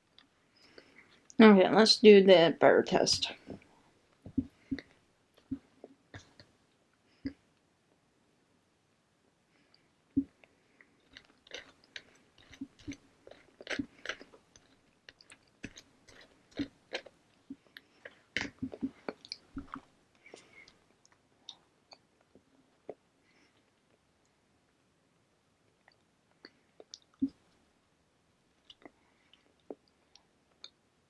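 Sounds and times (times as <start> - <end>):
chewing and biting bread: 10.2 - 23.0.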